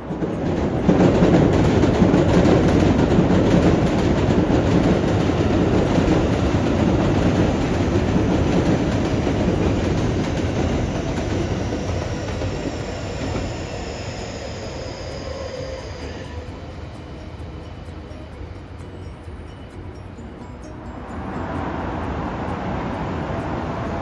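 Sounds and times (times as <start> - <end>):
train wheels rumbling on rails: 0.0 - 24.0
wheel clicks: 0.0 - 24.0.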